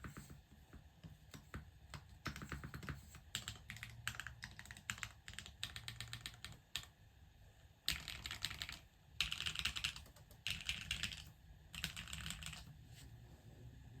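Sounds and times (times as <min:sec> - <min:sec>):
mechanical keyboard keystrokes: 0:01.3 - 0:06.9, 0:07.9 - 0:12.7.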